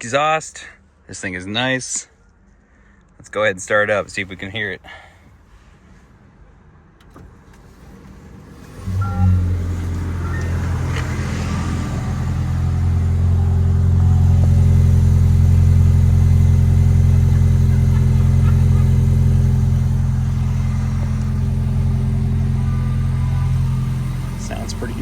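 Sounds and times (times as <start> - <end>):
car exhaust idling drone: 8.4 - 25.0.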